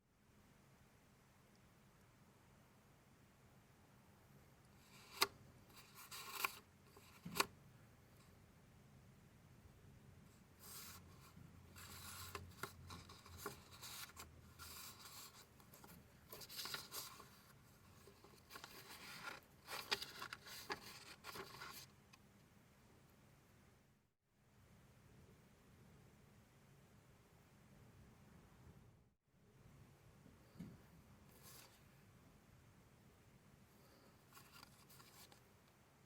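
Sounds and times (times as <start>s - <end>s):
paper rustling: 4.8s - 7.5s, 10.6s - 21.9s, 34.3s - 35.4s.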